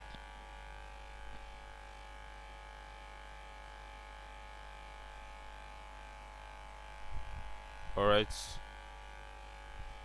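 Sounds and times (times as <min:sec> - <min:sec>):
electrical hum with high tones: 0:00.0 - 0:10.0.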